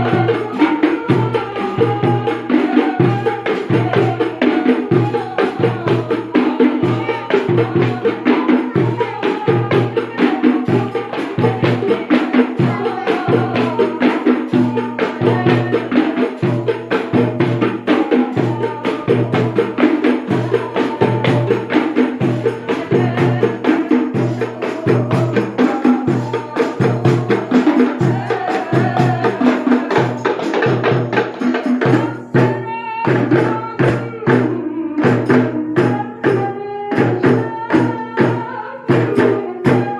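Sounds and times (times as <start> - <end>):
jingling hand percussion: 0.0 - 39.9.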